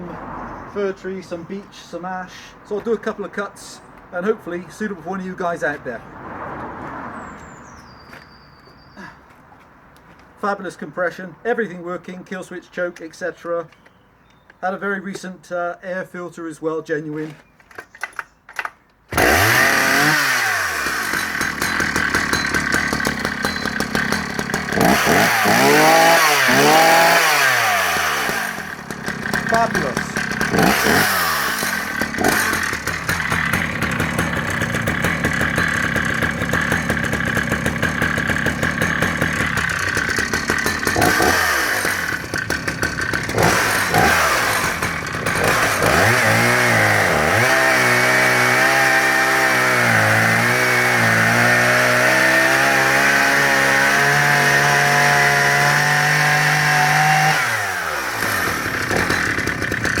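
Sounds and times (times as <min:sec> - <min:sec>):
chainsaw idling and revving: 0:19.1 - 1:00.0.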